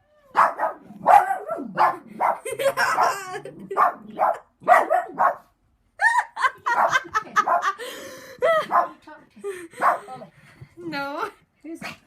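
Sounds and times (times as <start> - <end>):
dog barking sharply: 0.4 - 2.4, 3.8 - 5.5.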